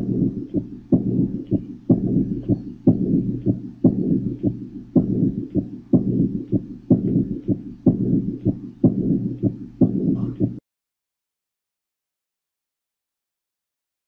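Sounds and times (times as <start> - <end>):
heart murmur noise: 0.0 - 10.6
heartbeat through stethoscope: 0.0 - 10.6.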